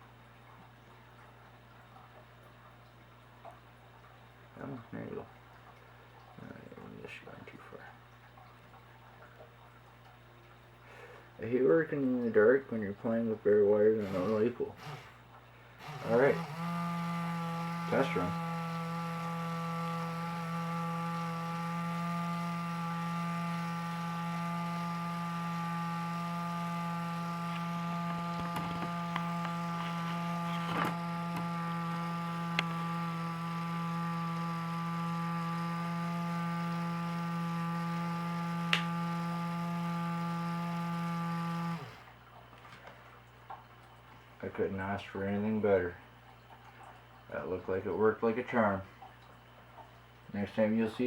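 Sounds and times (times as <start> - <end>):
small electric motor whine: 14.0 - 15.2, 15.8 - 42.1.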